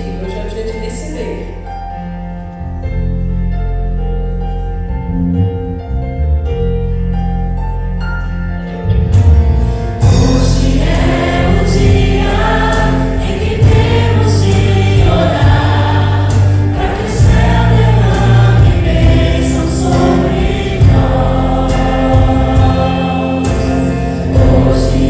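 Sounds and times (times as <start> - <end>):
steady bass line: 0.0 - 25.0
choir singing gospel song: 9.6 - 25.0.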